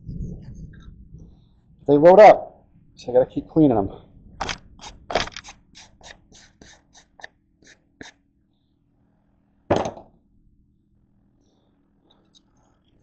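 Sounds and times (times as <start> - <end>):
brush scratching a metal file: 4.4 - 8.2.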